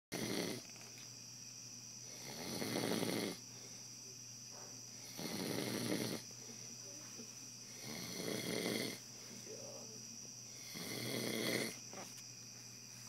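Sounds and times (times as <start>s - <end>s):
man snoring: 0.1s - 0.7s, 2.1s - 3.4s, 5.0s - 6.3s, 7.7s - 9.0s, 10.5s - 11.8s
quiet breathing: 2.0s - 11.9s.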